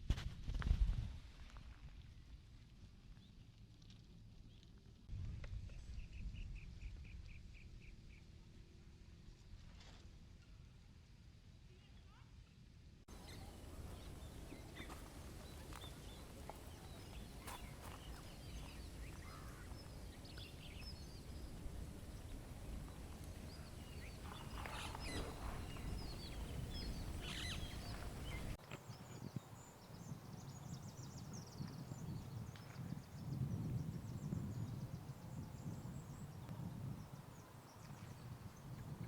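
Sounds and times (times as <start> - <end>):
rapid high bird twittering: 13.1 - 38.8
birds chirping: 13.1 - 39.0
wind rumble: 13.1 - 39.0.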